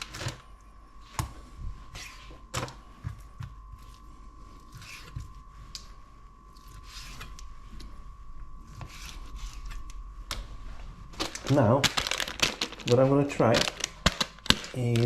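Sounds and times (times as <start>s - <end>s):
faint high-pitched hum: 0.0s - 15.0s.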